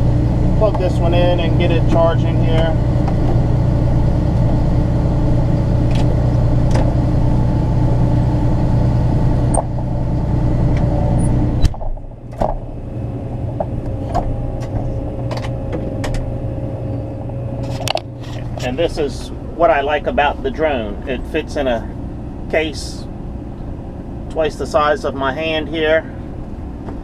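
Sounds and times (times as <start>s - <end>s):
quiet hum: 0.0s - 27.0s
vehicle engine running: 0.0s - 27.0s.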